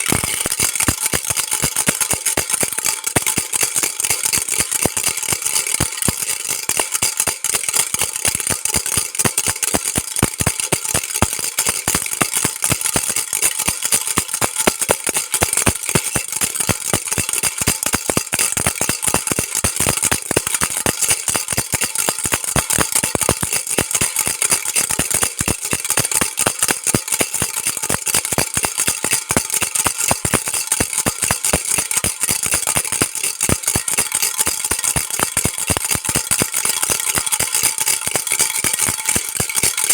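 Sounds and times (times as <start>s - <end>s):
baby rattle shaken fast: 0.0s - 39.9s.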